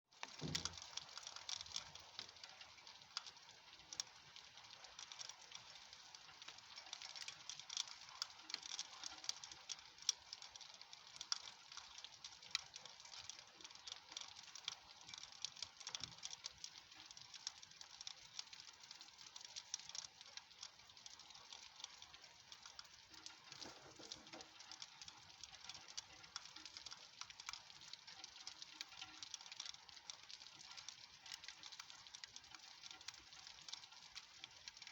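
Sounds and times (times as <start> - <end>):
raindrops pattering: 0.1 - 34.9.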